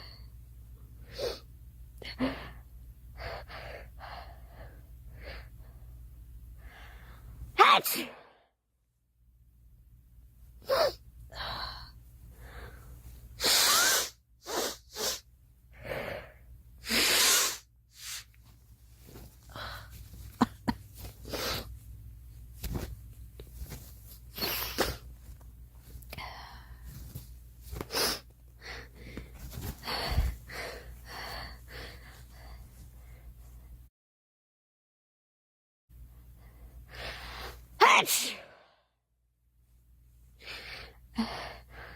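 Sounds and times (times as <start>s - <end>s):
woman sneezing: 7.6s - 8.2s, 13.4s - 15.2s, 16.8s - 18.2s, 37.8s - 38.5s.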